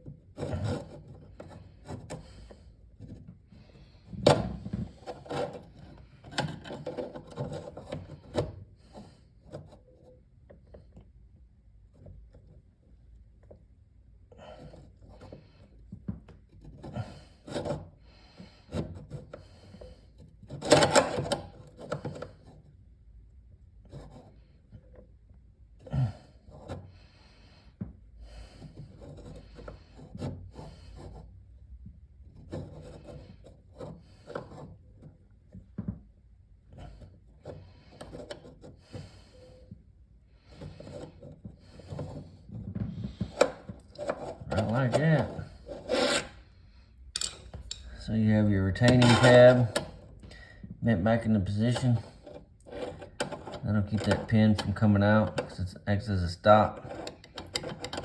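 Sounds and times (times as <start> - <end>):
screwdriver scraping metal: 16.5 - 22.4, 36.7 - 39.7, 40.5 - 42.5, 43.1 - 50.3, 51.0 - 55.6, 56.5 - 58.0.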